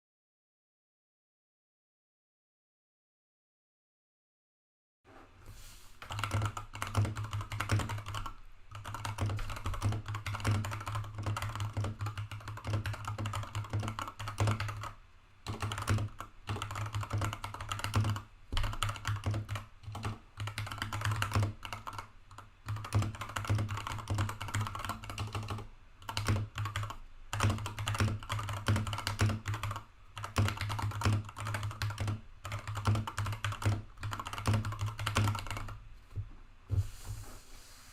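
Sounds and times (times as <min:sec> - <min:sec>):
mechanical keyboard typing: 0:06.0 - 0:35.8.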